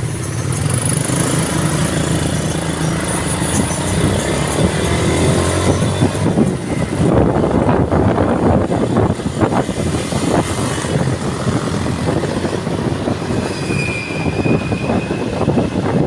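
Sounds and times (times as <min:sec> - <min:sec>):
vehicle rumbling: 0:00.0 - 0:16.0
high-pitched squeal: 0:00.1 - 0:07.8, 0:12.6 - 0:16.0.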